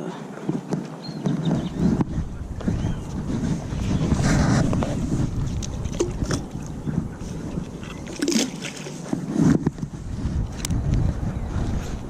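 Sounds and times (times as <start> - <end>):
wind buffeting microphone: 0.0 - 12.0
water sloshing and splashing: 3.3 - 10.0.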